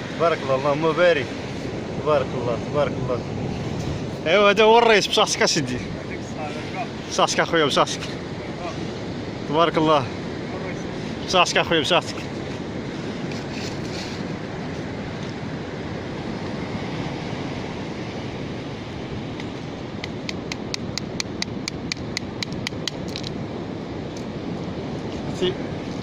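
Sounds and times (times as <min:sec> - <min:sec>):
surf: 0:00.0 - 0:26.0
wind: 0:00.0 - 0:26.0.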